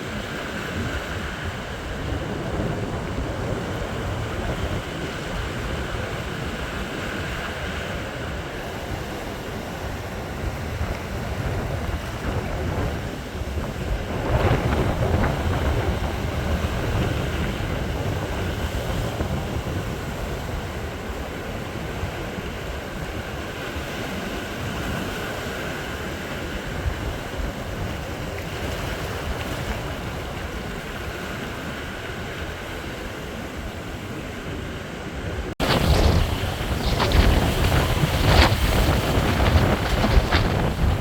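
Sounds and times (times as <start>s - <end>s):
sea waves washing: 0.0s - 41.0s
wind buffeting microphone: 0.0s - 41.0s.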